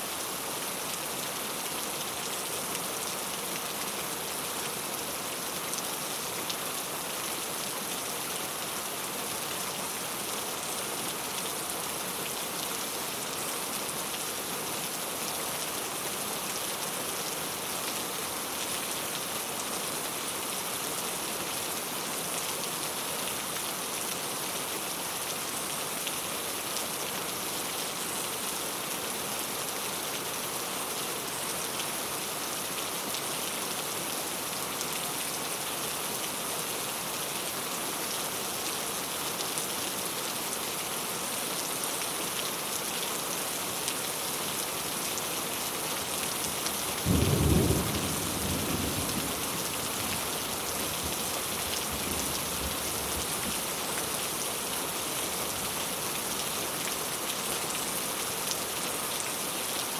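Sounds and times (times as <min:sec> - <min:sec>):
rain pattering on tile roof: 0:40.9 - 0:59.9.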